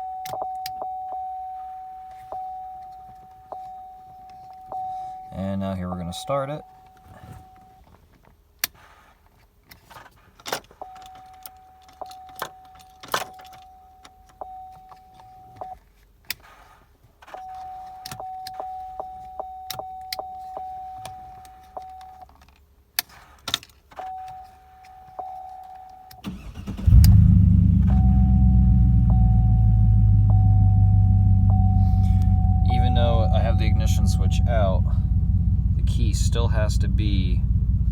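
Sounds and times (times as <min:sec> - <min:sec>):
warning chime tone: 0:00.0 - 0:07.8, 0:27.8 - 0:37.3
car engine cranking and running: 0:26.2 - 0:37.9.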